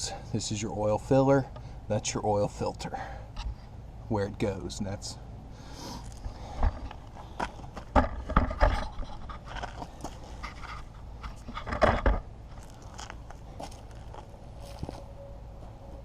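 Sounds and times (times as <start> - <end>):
knocks and scrapes of parts: 6.1 - 15.0.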